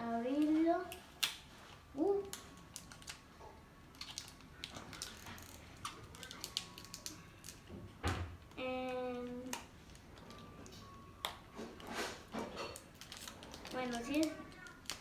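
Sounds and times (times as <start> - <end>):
packaging rustling and clicking: 2.2 - 3.2, 3.9 - 7.7, 9.1 - 15.0.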